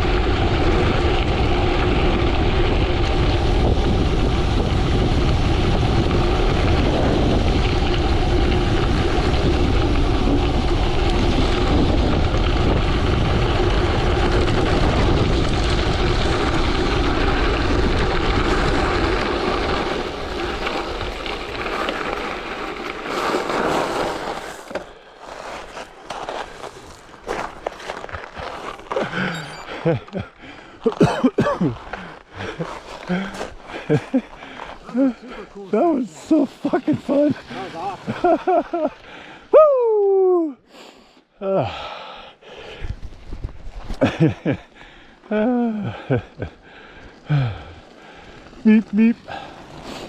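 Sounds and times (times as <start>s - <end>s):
wind rushing over microphone: 0.0s - 23.3s
gravel bike noise: 0.0s - 50.0s.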